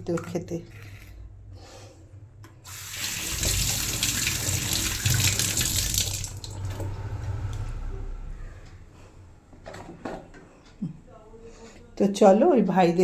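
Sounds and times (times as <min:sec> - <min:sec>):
tap water running into sink: 0:02.7 - 0:06.9.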